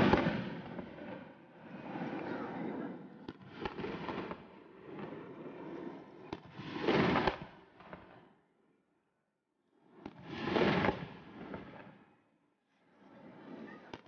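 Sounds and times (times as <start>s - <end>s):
fireworks crackling: 0.0s - 2.1s
fireworks bursting: 0.0s - 2.5s, 3.2s - 5.6s, 10.1s - 12.0s.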